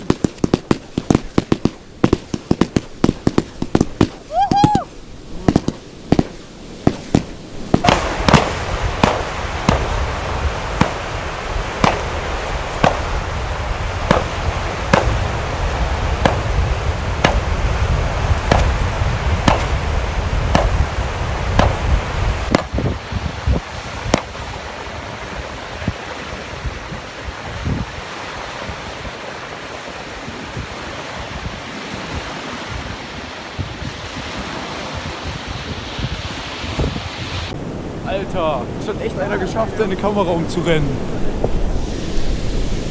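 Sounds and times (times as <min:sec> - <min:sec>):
fireworks banging: 0:00.0 - 0:23.0, 0:24.0 - 0:24.5
steady rushing noise: 0:00.0 - 0:28.0, 0:36.0 - 0:42.9.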